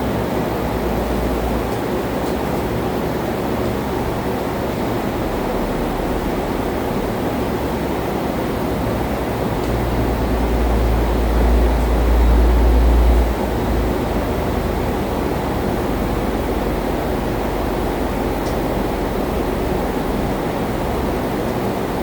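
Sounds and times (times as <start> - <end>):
machine rumble with hiss: 0.0 - 22.0.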